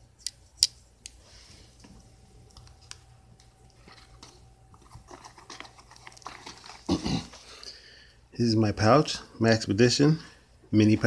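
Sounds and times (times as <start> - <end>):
handling rustle: 3.8 - 7.4.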